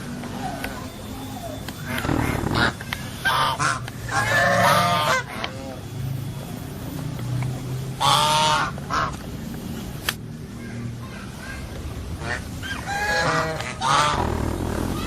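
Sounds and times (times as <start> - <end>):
steady low hum: 0.0 - 15.0
geese honking: 1.8 - 5.8, 8.0 - 9.2, 12.2 - 14.4.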